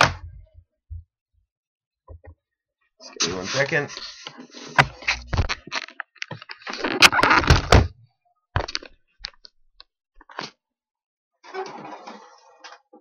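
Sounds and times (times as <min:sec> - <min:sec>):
knocks and rubbing: 0:03.5 - 0:06.0.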